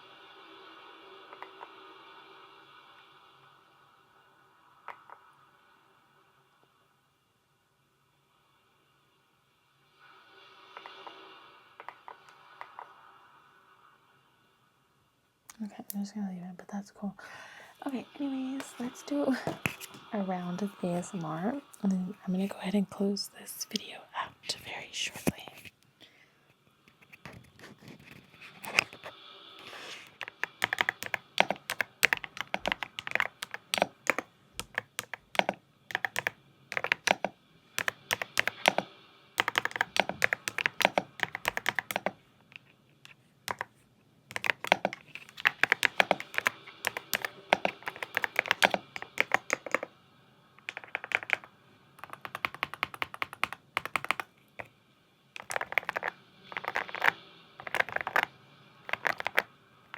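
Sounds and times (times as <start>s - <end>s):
mechanical keyboard typing: 11.8s - 12.9s, 27.2s - 42.7s, 43.5s - 43.7s, 44.3s - 49.9s, 50.6s - 54.3s, 55.4s - 59.5s.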